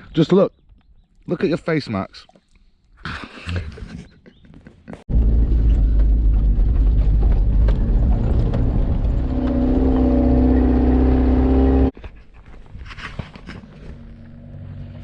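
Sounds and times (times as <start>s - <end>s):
vehicle engine rumble: 4.6s - 12.0s, 12.6s - 15.0s
steady engine hum: 5.1s - 11.9s.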